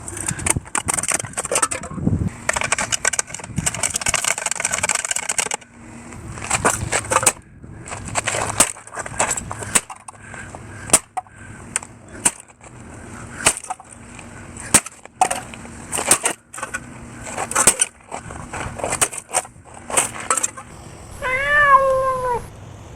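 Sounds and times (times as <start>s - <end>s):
hard objects clicking and rattling: 0.0s - 5.7s, 6.4s - 20.7s
low rumbling background: 5.6s - 22.9s.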